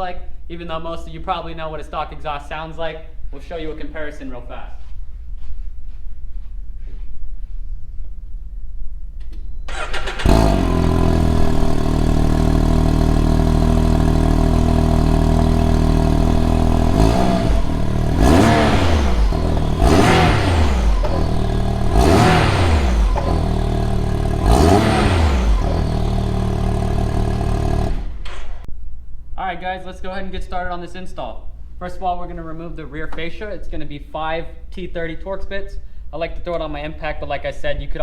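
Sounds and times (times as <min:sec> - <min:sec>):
engine starting and revving: 0:09.7 - 0:28.7.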